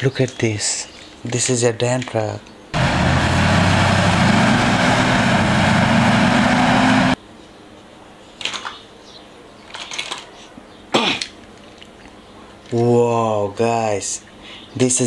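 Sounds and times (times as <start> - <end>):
truck engine humming: 2.8 - 7.2.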